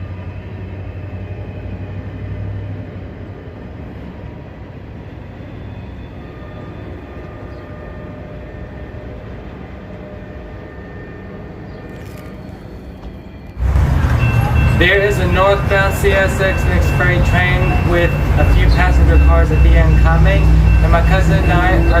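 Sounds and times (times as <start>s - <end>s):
freight train rumbling on rails: 0.0s - 22.0s
strong low hum: 13.6s - 22.0s.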